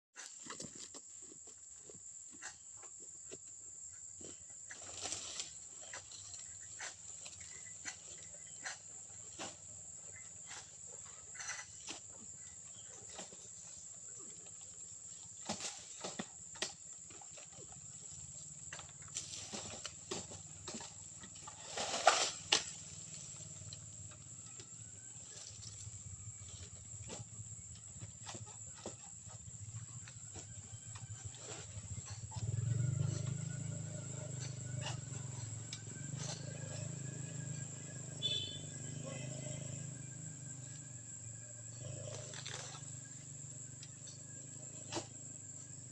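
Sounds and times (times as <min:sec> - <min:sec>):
high-pitched insect drone: 0:22.0 - 0:45.9.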